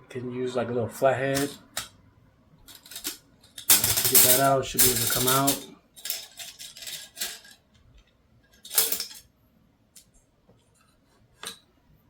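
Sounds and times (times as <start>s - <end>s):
metal rifle parts clicking: 1.4s - 1.9s, 2.6s - 9.3s.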